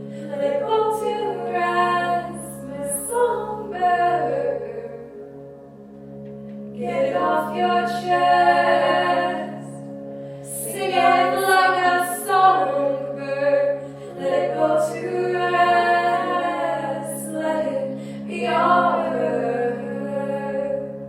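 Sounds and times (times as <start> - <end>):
singer breathing: 0.0 - 0.3, 10.1 - 10.5, 18.0 - 18.3
woman singing a cappella: 0.3 - 5.0, 10.5 - 20.8
looped vocal layers: 6.8 - 21.0.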